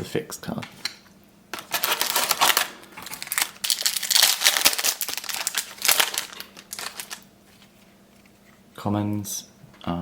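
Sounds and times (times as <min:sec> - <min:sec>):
wrapper tearing and crinkling: 0:01.6 - 0:07.3.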